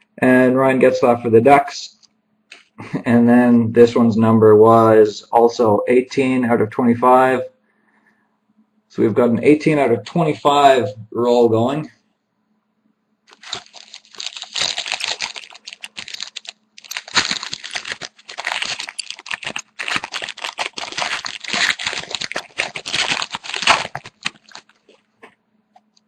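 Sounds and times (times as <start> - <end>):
wrapper crinkling: 13.3 - 25.1.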